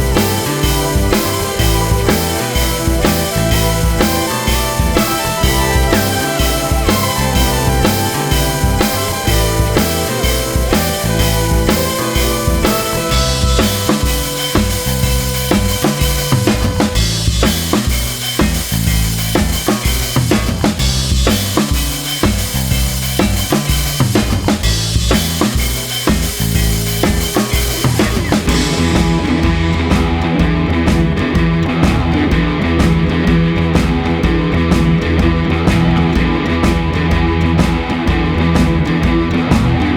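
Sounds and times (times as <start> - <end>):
rock music with drums and bass: 0.0 - 39.9.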